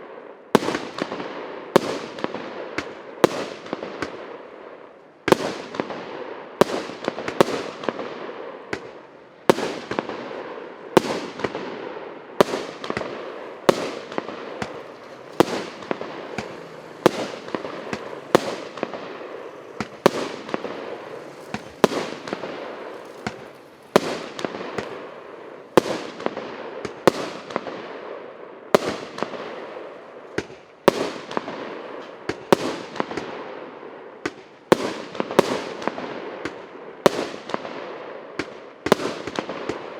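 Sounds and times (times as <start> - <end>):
firework cake bangs with hiss: 12.4 - 27.8.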